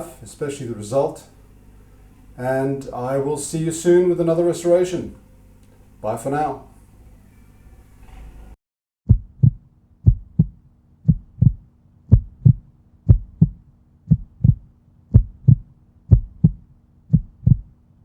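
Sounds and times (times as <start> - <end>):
faint steady hum: 0.0 - 8.6
low heartbeat-like thumps: 9.1 - 17.7.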